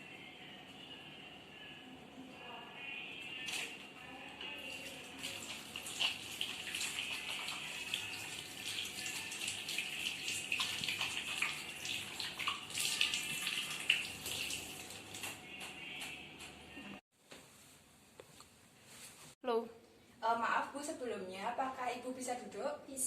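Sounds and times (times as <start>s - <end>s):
tap water running into sink: 4.7s - 15.4s.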